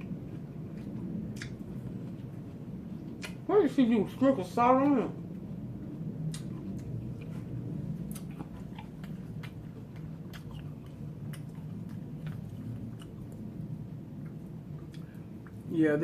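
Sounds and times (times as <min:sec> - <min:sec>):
chewing and biting food: 0:00.0 - 0:03.5, 0:06.2 - 0:15.7
low steady hum: 0:00.0 - 0:16.0.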